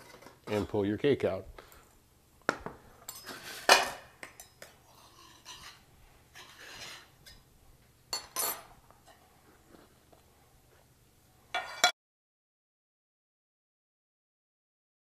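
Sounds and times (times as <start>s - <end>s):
metal pan clinking and scraping: 3.0s - 7.4s, 8.1s - 9.2s, 11.5s - 11.9s.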